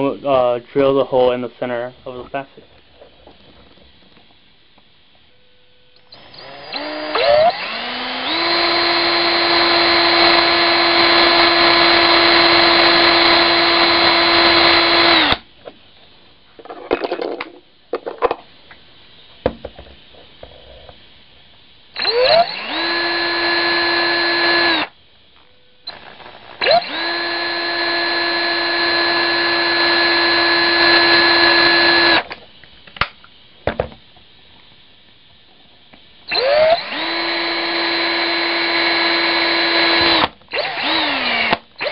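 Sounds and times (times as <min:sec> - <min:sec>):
electric drill whining: 0:06.0 - 0:15.4, 0:22.0 - 0:25.0, 0:25.8 - 0:32.3, 0:36.3 - 0:41.9.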